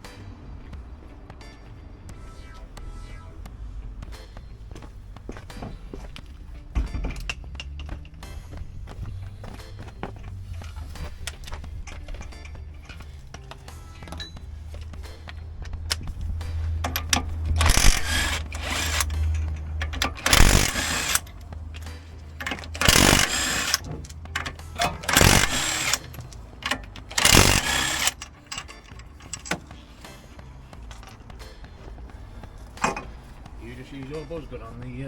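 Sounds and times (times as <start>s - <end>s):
impact wrench bursts: 16.7s - 29.7s.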